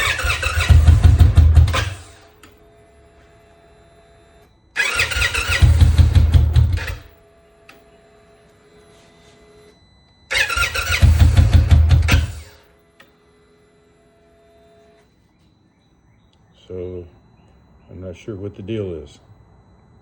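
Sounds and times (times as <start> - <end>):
motorcycle engine starting briefly: 0.0 - 2.3, 4.8 - 7.1, 10.3 - 12.6
faint steady hum: 12.4 - 20.0.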